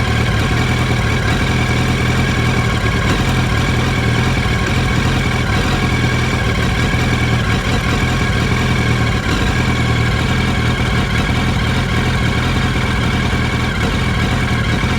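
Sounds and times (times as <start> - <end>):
motorcycle engine idling roughly: 0.0 - 14.9.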